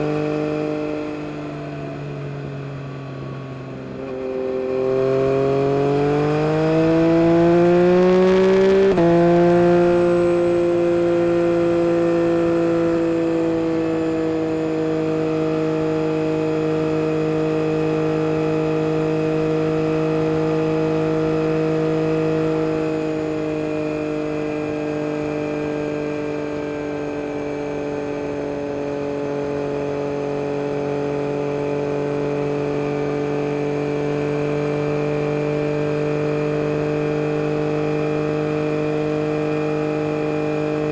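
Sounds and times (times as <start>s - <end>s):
motorcycle engine revving: 4.0s - 26.6s.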